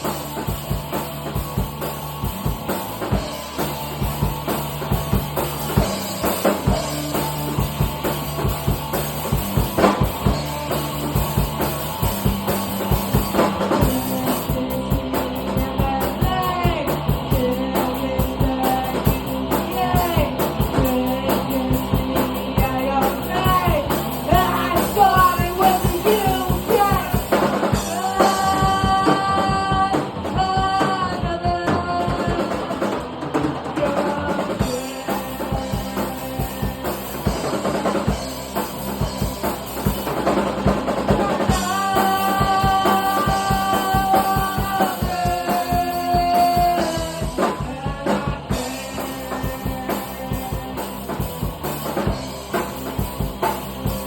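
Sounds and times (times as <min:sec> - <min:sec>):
drum kit beat: 0:00.0 - 0:54.0
guitar: 0:00.0 - 0:54.0
person singing: 0:13.3 - 0:33.0, 0:33.6 - 0:38.0, 0:40.2 - 0:52.2.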